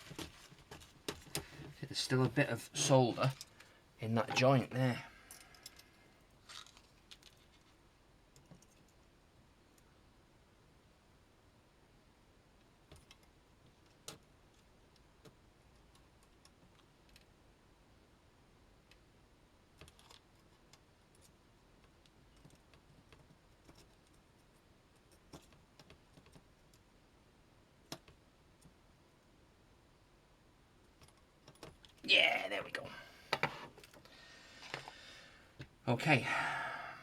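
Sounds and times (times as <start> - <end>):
faint clicks and taps of tools: 0.0 - 2.4, 5.3 - 6.0, 6.7 - 9.1, 12.6 - 17.3, 19.7 - 26.9, 27.8 - 29.3, 30.8 - 32.0, 33.3 - 35.0.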